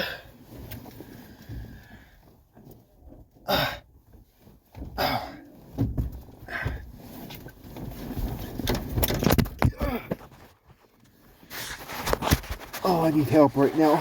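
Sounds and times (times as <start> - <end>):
man straining breaths and grunts: 0.0 - 0.4, 3.4 - 4.0, 4.8 - 7.0, 9.6 - 10.4.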